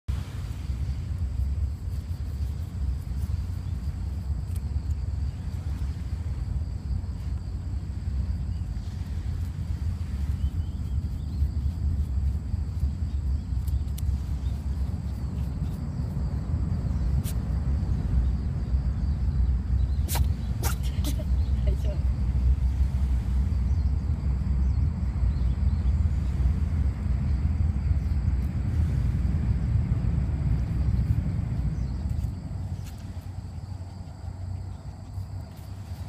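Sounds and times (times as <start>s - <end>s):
puppy digging in sand: 0.1s - 18.2s, 19.8s - 21.6s, 28.5s - 36.0s
wind buffeting microphone: 0.1s - 36.0s.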